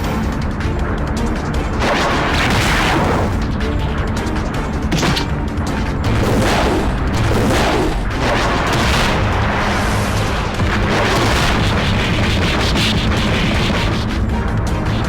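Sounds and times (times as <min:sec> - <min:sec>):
background music with low bass: 0:00.0 - 0:15.0
booming blasts: 0:01.7 - 0:03.4, 0:04.8 - 0:14.2
rushing swells of noise: 0:06.0 - 0:14.3.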